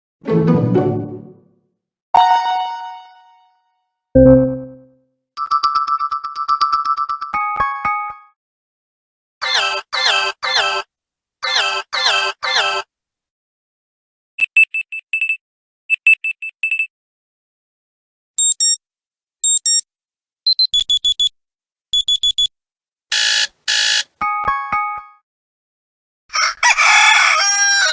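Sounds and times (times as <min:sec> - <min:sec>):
falling chime notes: 0:02.2 - 0:03.5, 0:04.2 - 0:04.9
quick high phone beeps: 0:04.2 - 0:04.9, 0:22.0 - 0:22.5
short double tones: 0:04.2 - 0:04.9.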